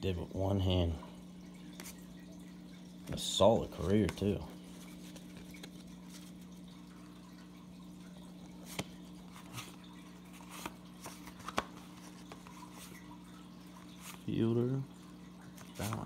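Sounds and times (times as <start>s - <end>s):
cards being flipped: 4.0s - 6.5s, 8.6s - 13.0s.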